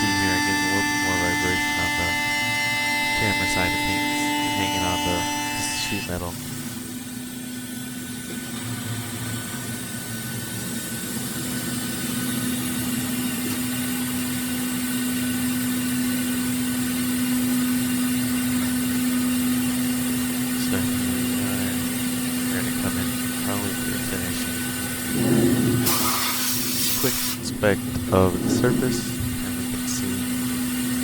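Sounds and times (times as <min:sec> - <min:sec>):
milling machine cutting metal: 0:00.0 - 0:07.0, 0:16.8 - 0:31.0.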